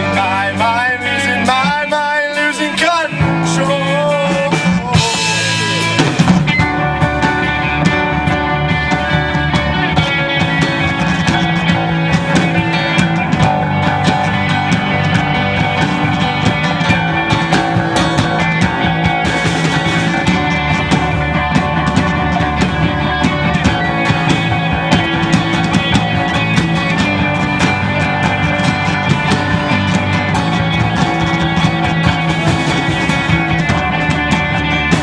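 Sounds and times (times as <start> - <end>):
person singing: 0.0 - 6.4
live rock band playing: 0.0 - 35.0.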